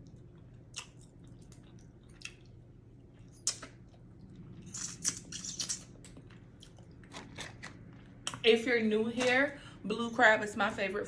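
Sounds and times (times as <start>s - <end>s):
wet chewing and mouth smacks: 0.0s - 8.4s.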